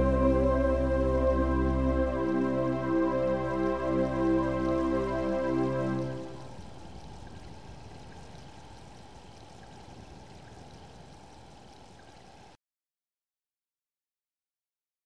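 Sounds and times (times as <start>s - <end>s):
rain hissing: 0.0s - 12.6s
faint drips: 6.2s - 12.6s.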